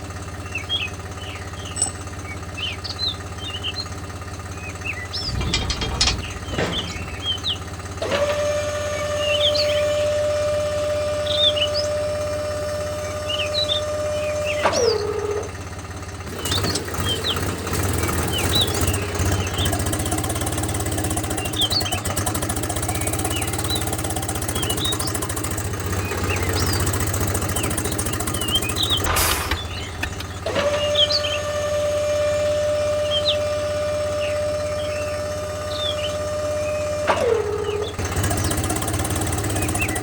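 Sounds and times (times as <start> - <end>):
birds chirping: 0.4 - 7.8, 16.4 - 31.5, 34.2 - 37.0, 37.6 - 40.0
rough rhythmic mechanical running: 0.8 - 8.0, 15.6 - 37.0, 37.6 - 40.0.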